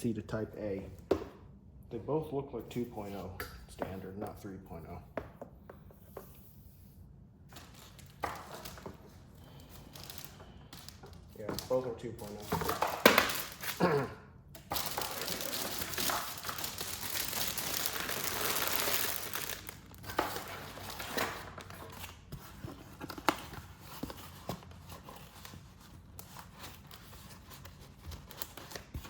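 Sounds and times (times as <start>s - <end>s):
packaging crinkling: 7.5s - 14.0s, 14.6s - 22.2s.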